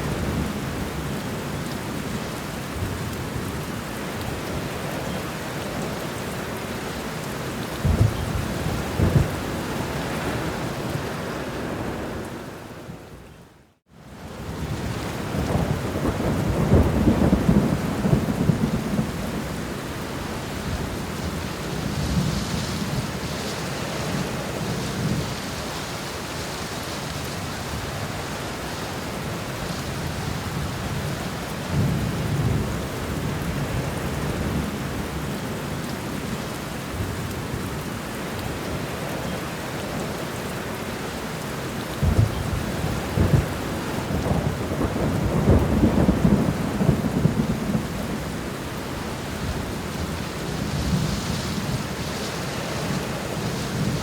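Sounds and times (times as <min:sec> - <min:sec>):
steady rain falling: 0:00.0 - 0:54.0
thunder rumbling: 0:07.7 - 0:11.0, 0:14.5 - 0:20.0, 0:41.9 - 0:52.1.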